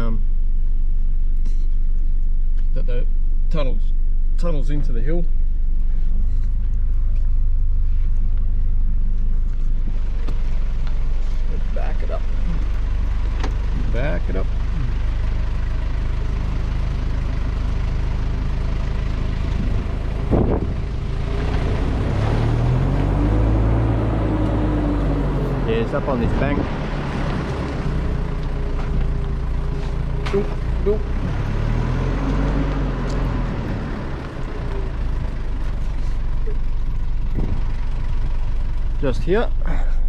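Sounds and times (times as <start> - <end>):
road noise on dirt track: 0.0 - 40.0
vehicle engine reversing: 3.1 - 40.0
vehicle bump: 19.4 - 22.0, 25.3 - 31.6, 32.2 - 39.0.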